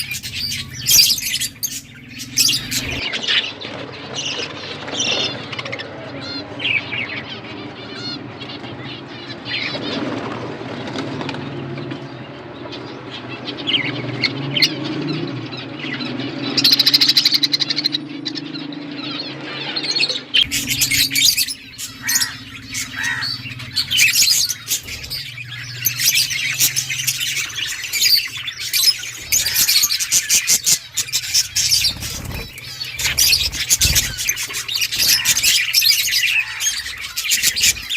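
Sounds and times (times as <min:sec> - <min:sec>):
budgerigars chirping and squawking: 0:00.0 - 0:10.3, 0:12.7 - 0:37.9.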